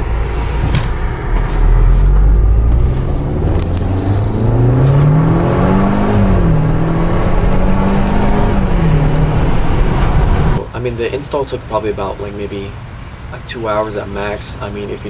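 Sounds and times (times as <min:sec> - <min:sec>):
car engine accelerating: 0:00.0 - 0:10.7.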